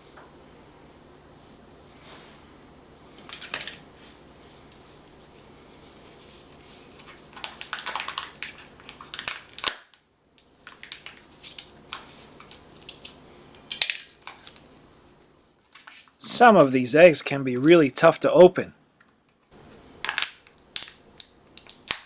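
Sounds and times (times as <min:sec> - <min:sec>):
foil crinkling: 0:06.8 - 0:10.0, 0:10.6 - 0:14.8, 0:19.6 - 0:22.0
chocolate shell cracking: 0:07.4 - 0:10.0, 0:10.7 - 0:14.8, 0:20.0 - 0:22.0.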